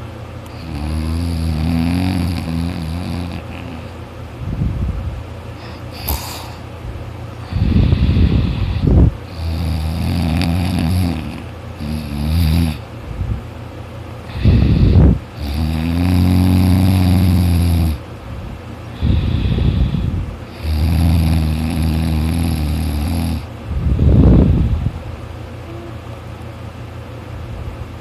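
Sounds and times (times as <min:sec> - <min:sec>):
person snoring loudly: 0:00.5 - 0:03.9, 0:05.6 - 0:06.6, 0:07.5 - 0:12.8, 0:14.3 - 0:18.0, 0:19.0 - 0:23.5.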